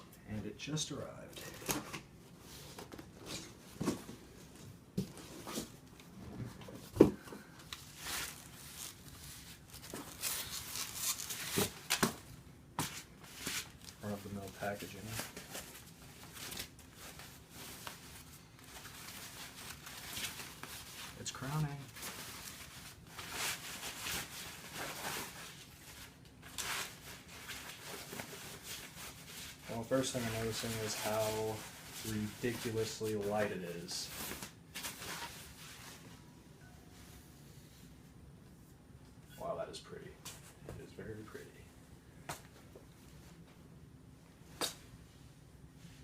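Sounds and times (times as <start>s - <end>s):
packaging rustling and scraping: 12.8s - 36.1s.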